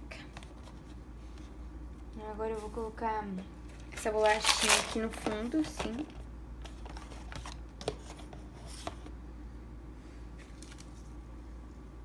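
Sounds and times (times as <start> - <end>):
low steady hum: 0.0 - 12.0
plastic snack packaging rustling: 3.8 - 6.1.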